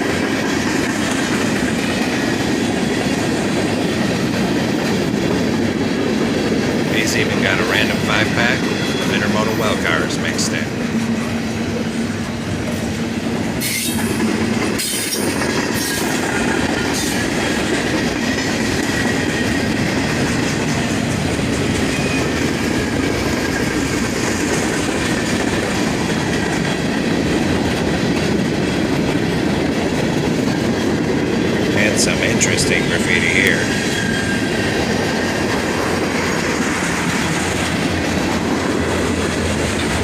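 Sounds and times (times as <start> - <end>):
train wheels rumbling on rail: 0.0 - 40.0
high wheel squeal: 7.2 - 10.1, 13.6 - 14.2, 21.8 - 22.4, 33.2 - 34.7.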